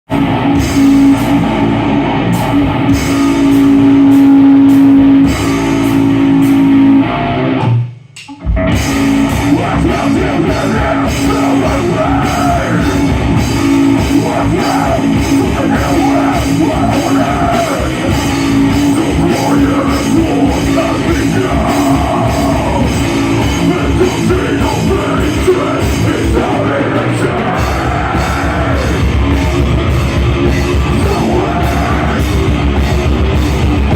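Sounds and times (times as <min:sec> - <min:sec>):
rock music with guitar and drums: 0:00.1 - 0:33.9
person singing: 0:09.3 - 0:33.0.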